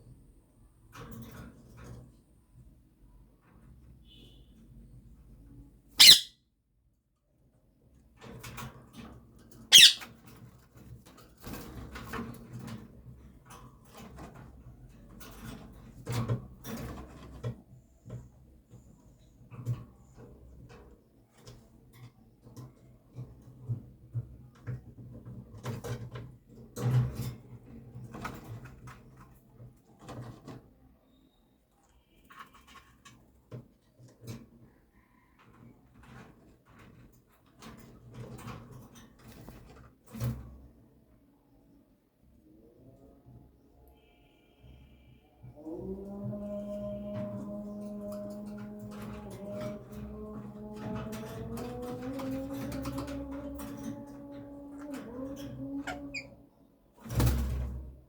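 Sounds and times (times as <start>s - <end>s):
parrot screech: 6.0s - 6.3s, 9.7s - 10.1s
faint clicking and rustling: 7.9s - 41.2s, 45.8s - 58.0s
parrot beak and feet clicking: 9.7s - 10.0s.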